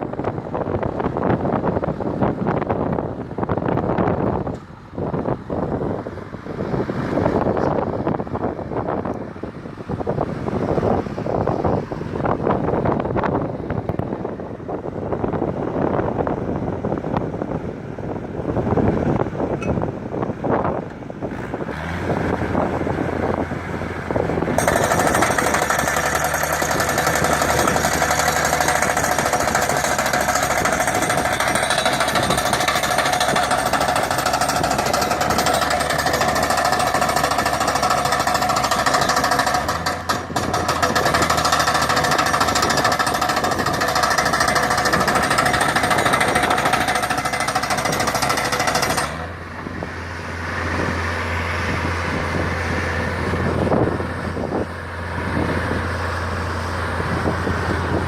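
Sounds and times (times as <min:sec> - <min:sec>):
loud mechanical rattle: 0:24.1 - 0:49.5.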